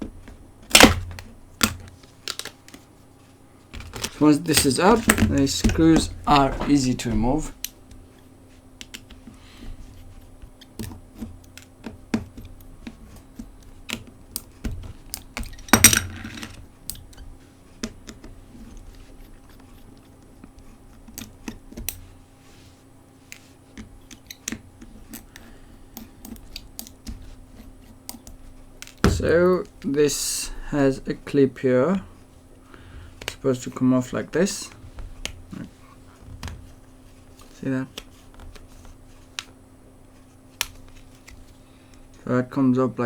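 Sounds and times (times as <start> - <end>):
hand tools clicking on plastic: 3.7 - 8.0, 8.8 - 22.1, 23.3 - 30.0, 32.7 - 33.6.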